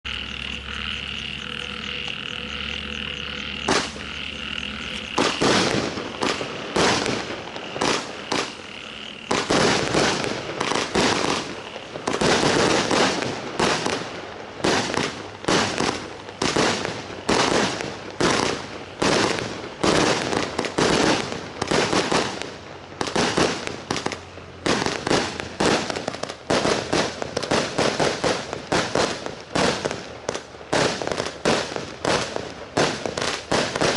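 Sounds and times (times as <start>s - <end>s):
high-pitched background tone: 0.1s - 5.4s
firework barrage shots crackling: 3.5s - 33.9s.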